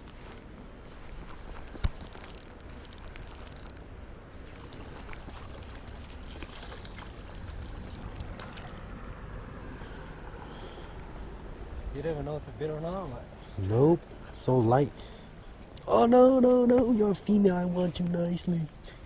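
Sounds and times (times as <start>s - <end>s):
low outdoor rumble: 0.0s - 19.0s
rapid high clicks: 1.7s - 3.8s.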